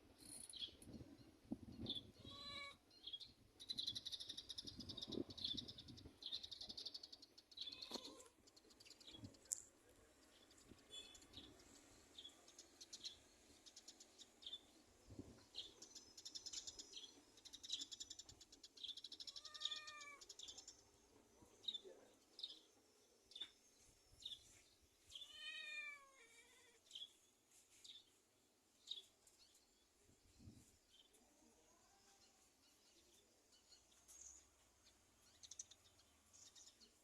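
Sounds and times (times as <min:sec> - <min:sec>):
cat meowing: 0:02.1 - 0:02.8, 0:07.6 - 0:08.3, 0:19.3 - 0:20.3, 0:25.1 - 0:26.8.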